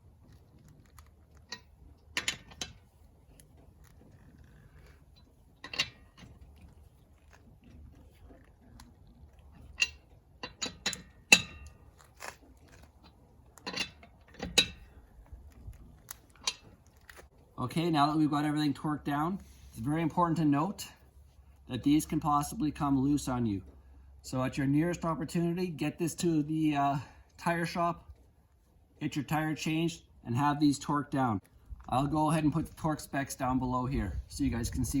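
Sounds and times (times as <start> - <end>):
lug wrench clicking on nuts: 5.6 - 6.3, 13.6 - 14.9.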